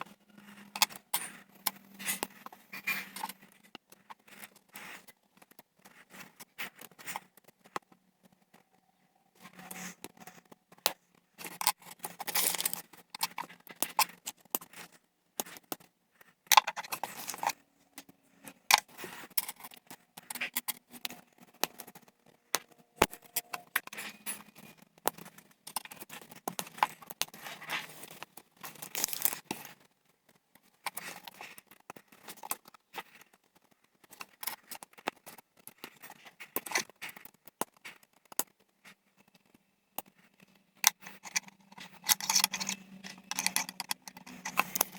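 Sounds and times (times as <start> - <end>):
plastic pieces clicking together: 10.2 - 18.1, 18.7 - 38.6, 39.3 - 44.9
rustling of pieces and bags: 11.2 - 44.9.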